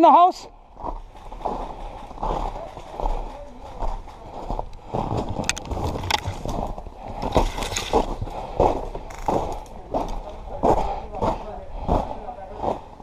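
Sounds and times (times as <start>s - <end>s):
footsteps: 0.6s - 13.0s
gear rustle: 0.9s - 10.4s.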